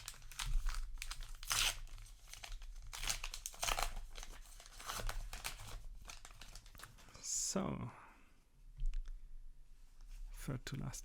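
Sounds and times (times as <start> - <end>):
paper wrapper tearing and crinkling: 0.0 - 7.0.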